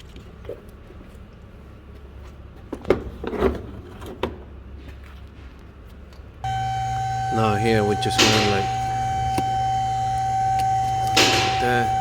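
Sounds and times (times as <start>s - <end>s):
electronic tone with low hum: 6.4s - 12.0s.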